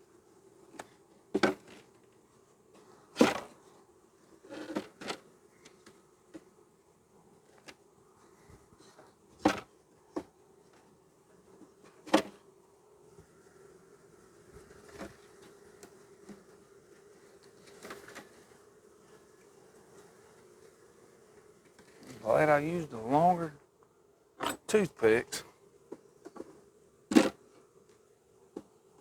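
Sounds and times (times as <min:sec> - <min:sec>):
bees buzzing: 0:18.4 - 0:23.6.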